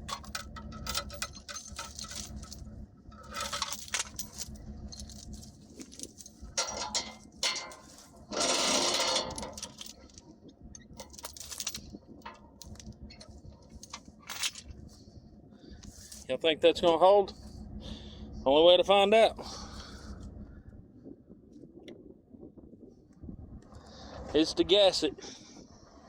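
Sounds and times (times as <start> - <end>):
chain clinking and rattling: 0.0 - 15.0
chain rasping scrape: 0.0 - 15.0
steady low hum: 0.0 - 26.0.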